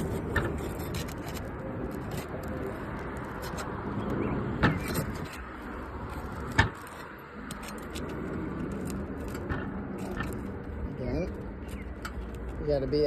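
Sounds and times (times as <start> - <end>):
hand tool scraping and prying shingles: 0.0 - 3.7, 4.7 - 12.6
shingle seal snapping: 4.6 - 10.8.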